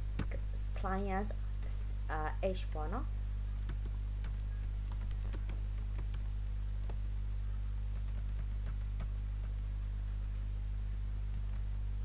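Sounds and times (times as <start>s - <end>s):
low electrical hum: 0.0s - 12.0s
typing on computer keyboard: 3.7s - 7.0s, 7.7s - 9.7s.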